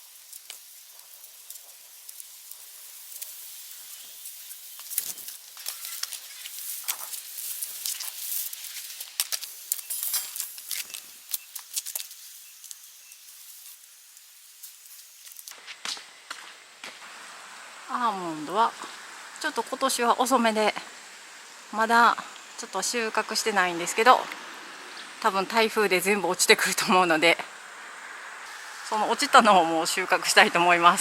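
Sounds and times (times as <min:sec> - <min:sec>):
rustling with sharp crackles: 0:00.0 - 0:17.1
steady high hiss: 0:00.0 - 0:31.0.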